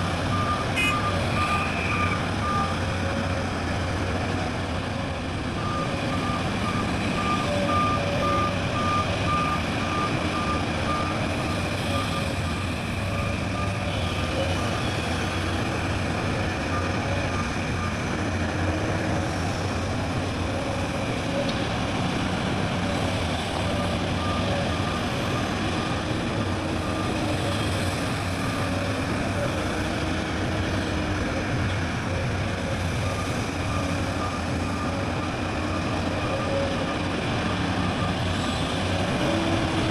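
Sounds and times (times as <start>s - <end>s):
reversing alarm beeping: 0.0s - 2.9s, 5.6s - 19.2s, 22.7s - 30.0s, 32.6s - 39.9s
diesel engine running: 0.0s - 39.9s.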